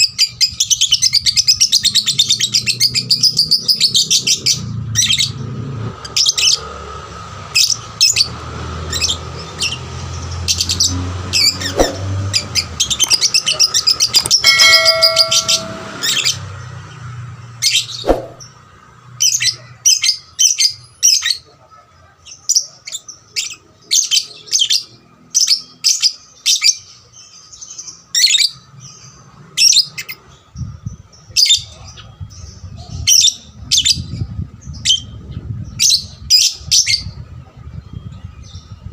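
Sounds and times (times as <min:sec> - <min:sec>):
bird chirping high-pitched: 0:11.4 - 0:16.4.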